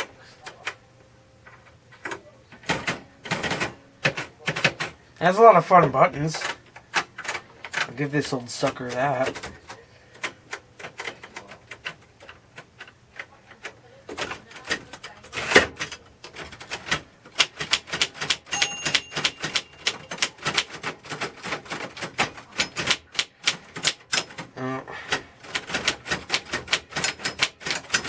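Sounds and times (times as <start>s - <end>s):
typewriter key strikes: 8.7s - 24.5s, 25.4s - 28.0s
typewriter bell ringing: 18.2s - 20.8s.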